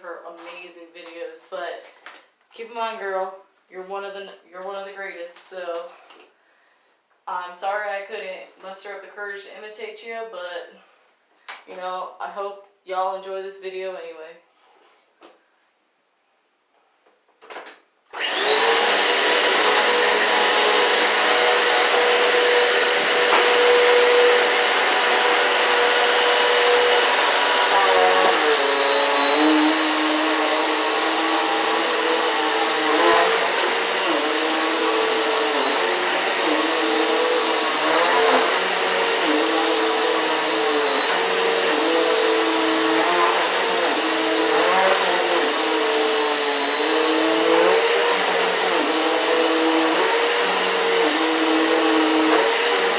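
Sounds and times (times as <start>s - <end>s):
vacuum cleaner whining: 18.1s - 52.9s.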